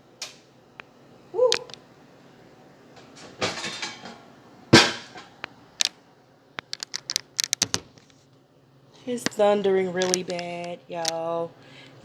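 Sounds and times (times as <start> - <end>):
light clicks and taps: 10.0 - 11.2.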